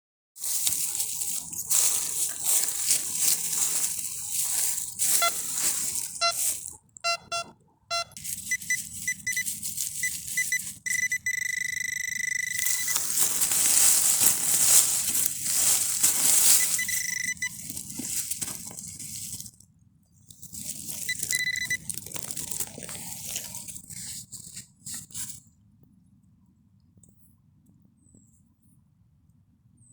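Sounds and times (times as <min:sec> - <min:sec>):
scratchy rustling and scraping: 0:00.4 - 0:06.8, 0:08.2 - 0:19.6, 0:20.3 - 0:25.4
metal detector steady tone: 0:00.5 - 0:18.8, 0:20.9 - 0:21.9
metal detector beeps: 0:03.3 - 0:17.8, 0:21.0 - 0:21.8.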